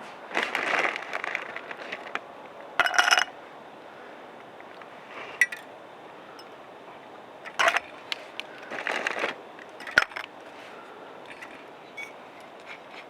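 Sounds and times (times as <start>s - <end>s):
scrapes and clicks of handling: 11.3s - 13.0s.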